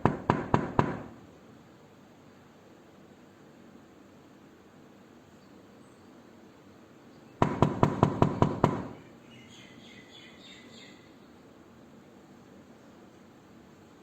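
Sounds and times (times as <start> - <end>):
knuckles knocking on wooden door: 0.0 - 1.1, 7.4 - 9.0
low hiss: 0.0 - 14.0
faint high chirping: 9.0 - 11.4.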